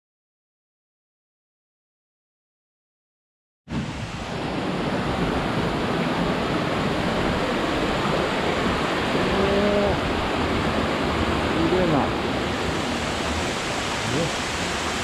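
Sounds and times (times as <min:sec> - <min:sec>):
waterfall roaring: 0:03.8 - 0:15.0.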